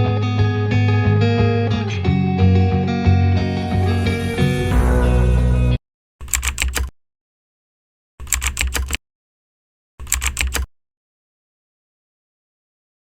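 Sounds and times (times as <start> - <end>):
guitar background music: 0.0 - 5.8
keyboard typing clicks: 6.2 - 6.9, 8.2 - 9.0, 10.0 - 10.7.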